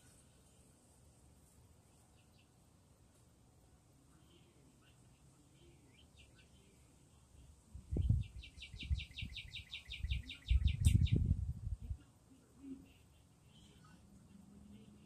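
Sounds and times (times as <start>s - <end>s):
faint bird chirps: 1.9s - 2.6s, 4.1s - 11.4s, 12.0s - 15.0s
wind gusting on microphone: 7.7s - 12.1s
songbird trilling: 8.0s - 11.3s.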